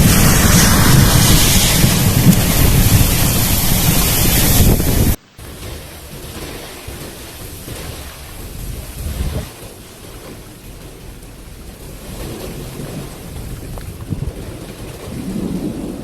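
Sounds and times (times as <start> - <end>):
heavy rain: 0.0 - 5.2, 11.0 - 16.0
wind buffeting microphone: 0.0 - 16.0.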